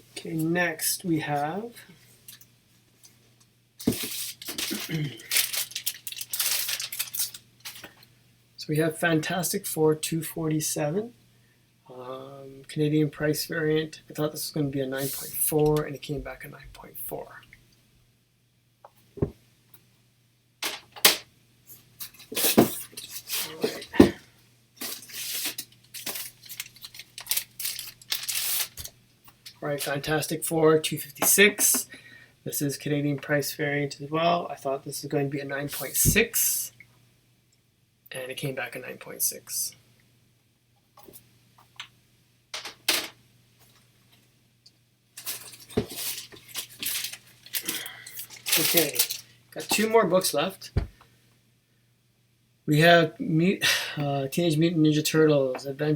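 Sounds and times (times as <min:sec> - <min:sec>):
plastic cases sliding and rustling: 0:03.8 - 0:07.9, 0:45.2 - 0:49.9.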